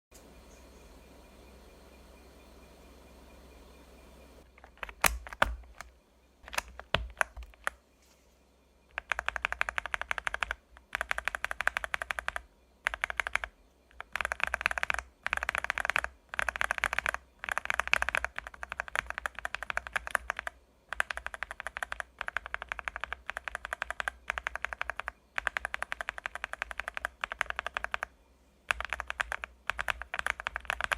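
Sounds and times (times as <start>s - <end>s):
clicky mechanical keyboard typing: 4.6s - 7.8s, 8.9s - 28.1s, 28.7s - 30.9s.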